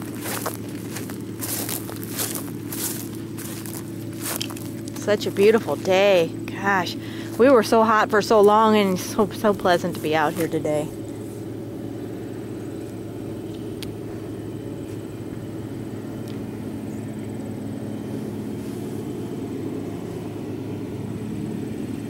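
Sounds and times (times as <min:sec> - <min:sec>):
tractor engine under load: 0:00.0 - 0:22.0
baler picking up hay: 0:00.1 - 0:05.9.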